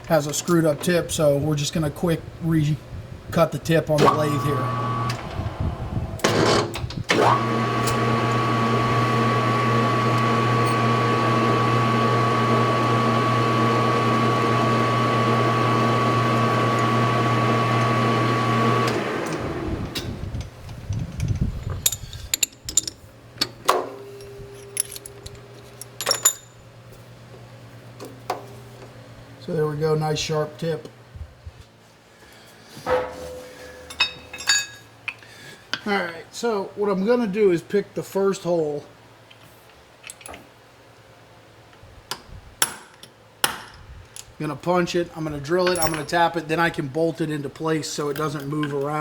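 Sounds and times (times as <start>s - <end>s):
metal lathe running: 4.0s - 19.8s.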